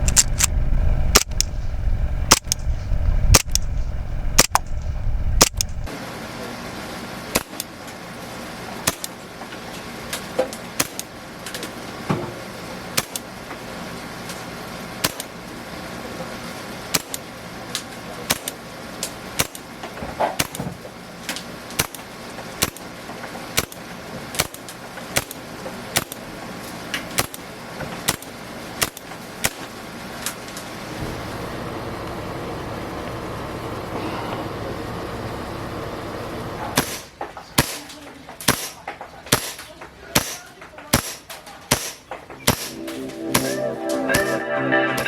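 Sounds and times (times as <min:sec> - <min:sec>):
airsoft pistol shots: 0:00.0 - 0:01.7, 0:02.3 - 0:05.9, 0:07.4 - 0:07.7, 0:08.8 - 0:09.2, 0:10.8 - 0:11.1, 0:13.0 - 0:13.3, 0:15.0 - 0:15.3, 0:16.9 - 0:17.2, 0:18.3 - 0:18.6, 0:19.4 - 0:19.7, 0:20.3 - 0:20.7, 0:21.8 - 0:22.9, 0:23.6 - 0:23.8, 0:24.4 - 0:25.4, 0:26.0 - 0:26.2, 0:27.2 - 0:27.4, 0:28.1 - 0:29.7, 0:36.8 - 0:37.9, 0:38.5 - 0:43.6
traffic-like background noise: 0:00.0 - 0:45.0.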